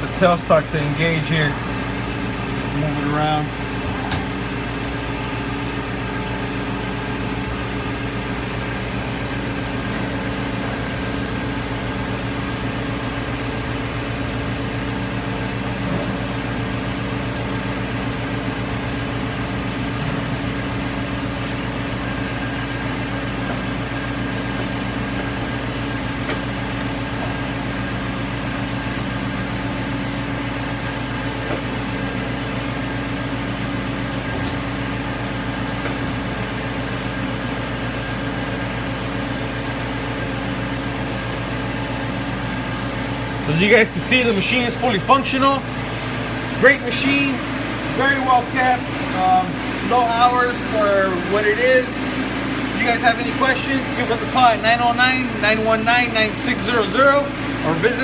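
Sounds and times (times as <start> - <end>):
machine tool humming: 0.0 - 6.2, 7.2 - 31.0.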